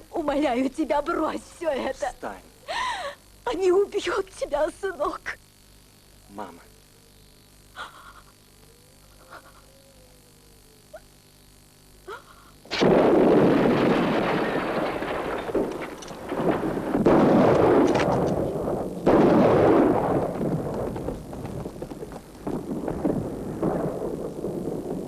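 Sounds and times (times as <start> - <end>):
artillery shell explosions: 12.7 - 25.0
sharp gunfire cracks: 12.7 - 25.0.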